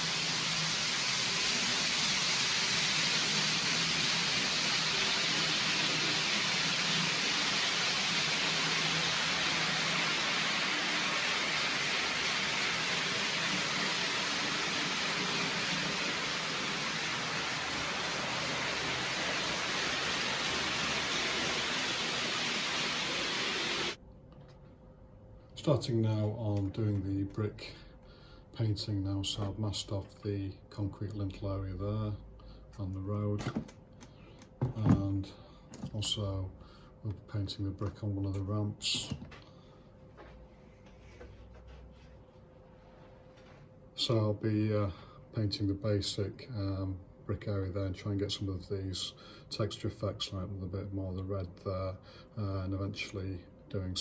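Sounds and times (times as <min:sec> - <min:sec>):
steady rushing hiss: 0:00.0 - 0:24.0.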